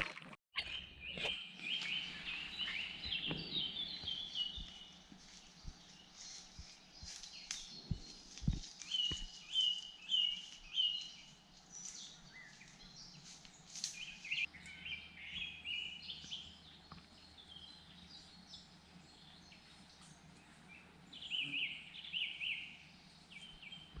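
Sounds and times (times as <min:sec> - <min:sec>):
birds singing and calling: 0:00.6 - 0:24.0.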